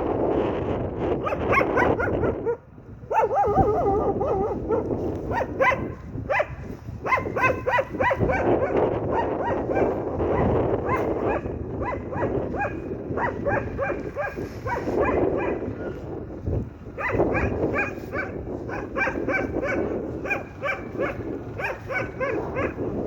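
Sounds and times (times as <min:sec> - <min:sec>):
wind rumbling on microphone: 0:00.0 - 0:23.0
dog whining: 0:01.2 - 0:05.9
dog barking: 0:01.2 - 0:16.0, 0:17.0 - 0:23.0.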